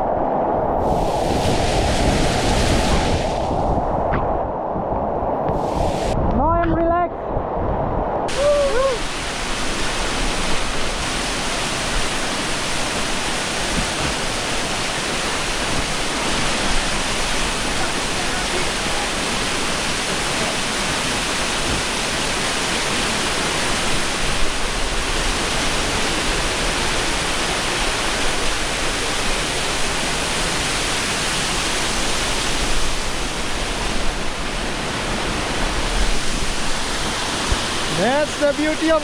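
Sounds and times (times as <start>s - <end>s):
waterfall rushing: 0.8s - 3.6s, 5.4s - 6.2s, 8.3s - 39.0s.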